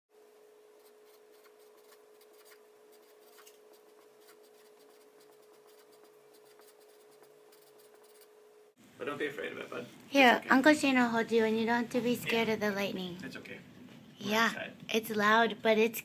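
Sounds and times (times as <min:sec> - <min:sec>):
faint scratches and clicks: 0:00.8 - 0:08.3.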